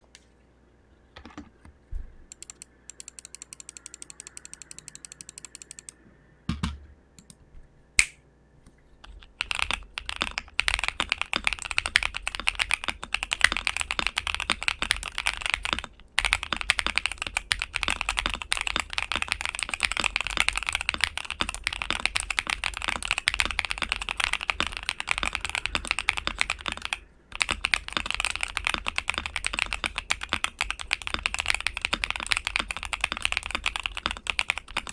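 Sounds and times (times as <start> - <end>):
mechanical keyboard typing: 1.2 - 7.4, 9.0 - 34.9
even ticks: 2.3 - 6.0.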